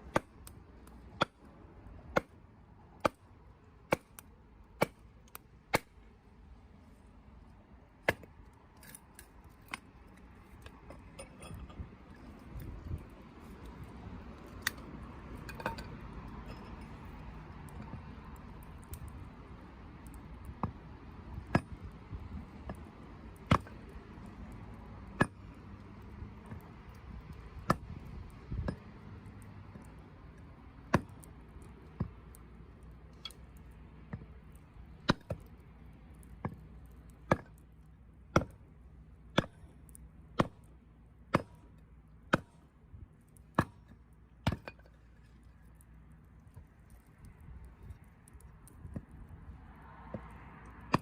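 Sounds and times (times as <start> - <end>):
campfire crackling and popping: 11.8 - 51.0.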